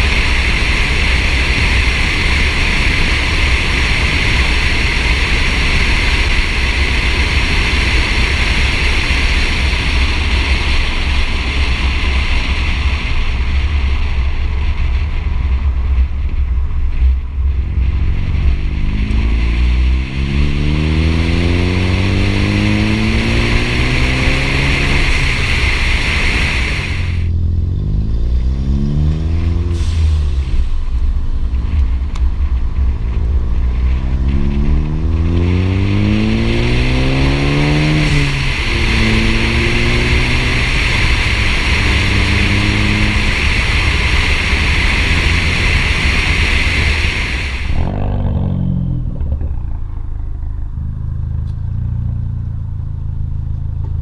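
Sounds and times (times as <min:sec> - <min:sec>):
car engine accelerating: 0:00.0 - 0:54.0
turbo hiss: 0:22.0 - 0:27.3.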